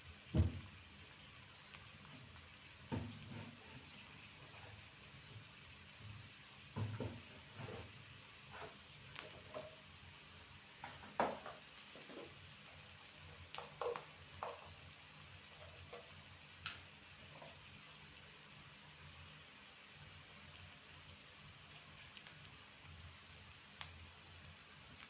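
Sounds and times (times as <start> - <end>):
vegetables sizzling in oil: 0.0 - 25.0
spatula knocking and scraping pan: 2.9 - 3.9, 6.8 - 9.8, 10.8 - 12.3, 13.5 - 14.8, 15.5 - 16.2.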